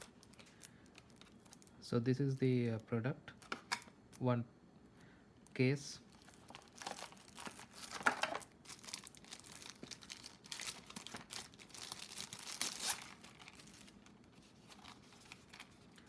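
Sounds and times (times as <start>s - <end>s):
packaging crinkling and rustling: 0.0s - 1.8s, 6.1s - 16.0s
packaging tearing: 6.1s - 14.0s.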